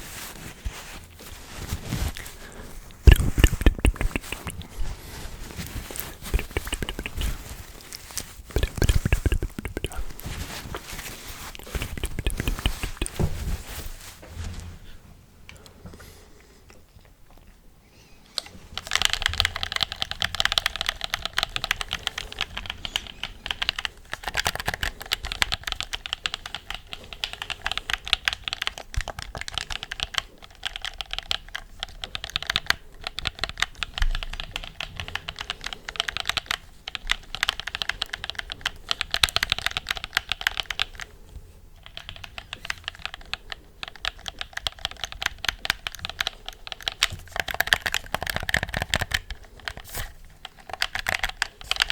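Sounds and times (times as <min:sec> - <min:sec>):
rapid clicking and tapping: 0:03.1 - 0:04.7, 0:05.6 - 0:07.6, 0:08.5 - 0:13.4, 0:18.8 - 0:41.1, 0:41.8 - 0:51.9.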